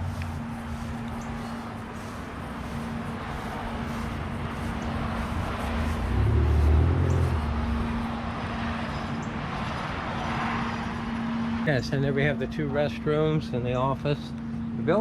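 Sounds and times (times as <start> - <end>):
steady low hum: 0.0 - 9.4
vehicle rumbling past: 0.0 - 12.5
road traffic passing: 0.0 - 15.0.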